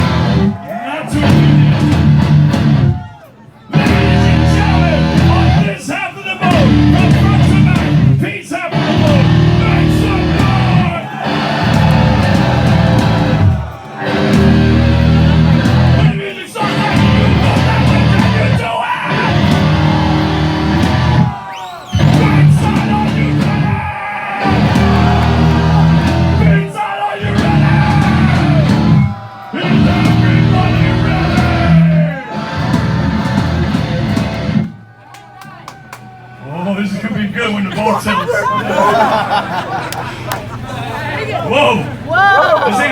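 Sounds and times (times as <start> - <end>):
punk band playing distorted guitar: 0.0 - 3.0, 3.7 - 5.8, 6.4 - 34.8.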